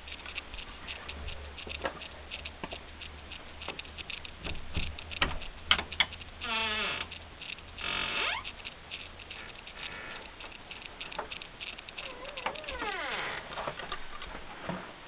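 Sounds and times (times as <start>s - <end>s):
soft handling taps and clicks: 0.0s - 6.4s.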